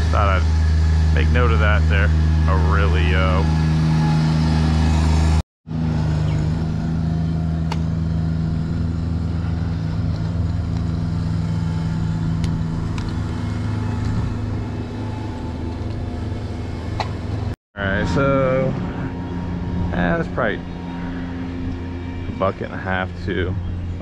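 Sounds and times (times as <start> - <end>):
skid steer engine running: 0.0 - 24.0.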